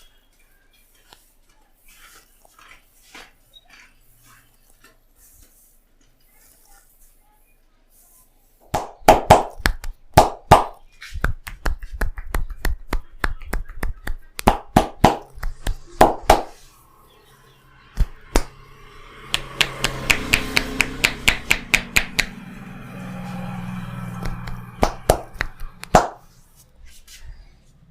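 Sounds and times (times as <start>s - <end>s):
hands slapping and tapping head: 8.7s - 16.6s, 18.0s - 18.5s, 19.3s - 22.3s, 24.2s - 26.3s.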